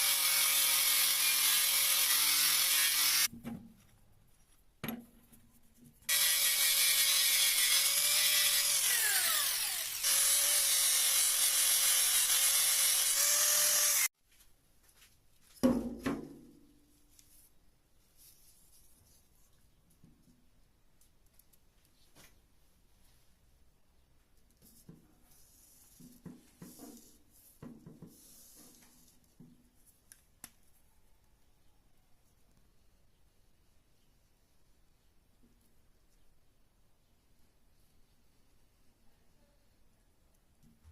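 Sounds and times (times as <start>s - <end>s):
power tool abrasive hiss: 6.1s - 14.1s
short scrapes and light knocks: 24.6s - 30.0s.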